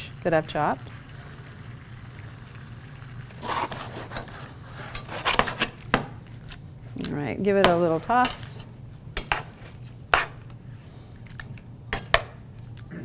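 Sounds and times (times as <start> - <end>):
low steady hum: 0.0 - 13.0
utensil scraping a pan: 3.3 - 6.1, 7.5 - 10.6.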